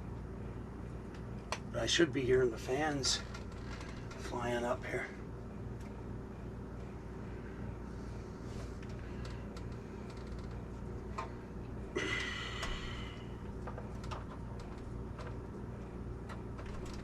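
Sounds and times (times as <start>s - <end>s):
computer fans humming: 0.0s - 17.0s.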